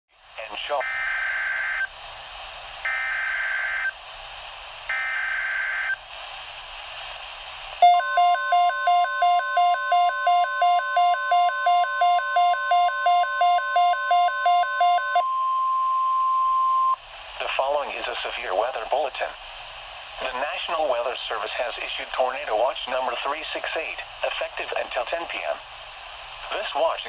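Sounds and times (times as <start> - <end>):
radio hiss: 0.3 - 0.9, 17.1 - 27.0
steady warning alarm tone: 7.8 - 15.4
harsh pulsing beep: 7.8 - 17.0.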